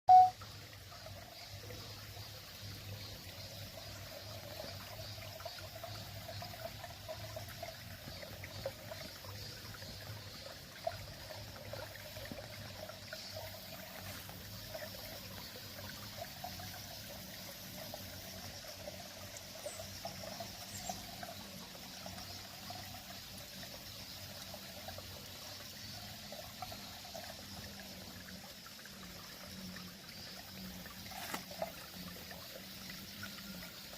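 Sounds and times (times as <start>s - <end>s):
stream trickling: 0.1s - 33.9s.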